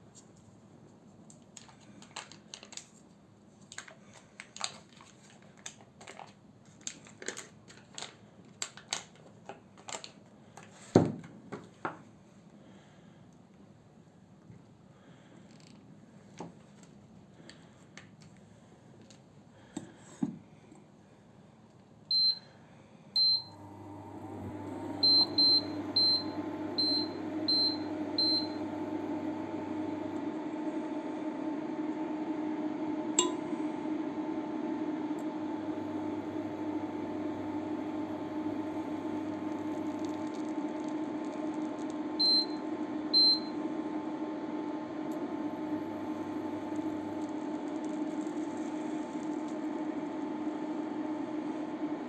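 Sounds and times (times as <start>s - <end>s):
microwave keypad beeps: 22.1s - 22.5s, 23.2s - 23.6s, 25.0s - 28.6s, 42.2s - 43.6s
microwave oven humming: 22.1s - 52.0s
microwave click: 23.2s - 34.0s.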